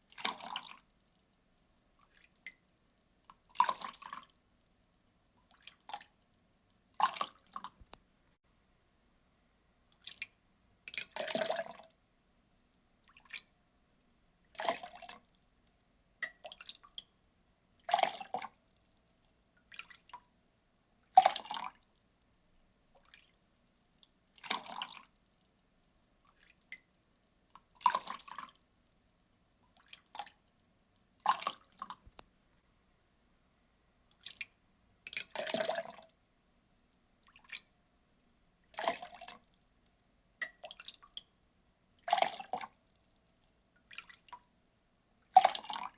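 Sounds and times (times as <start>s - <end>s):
water pouring in splashes: 21.1s - 21.8s, 24.4s - 25.1s, 27.5s - 28.6s, 35.1s - 36.1s, 38.7s - 39.5s, 42.0s - 42.7s, 45.3s - 45.9s.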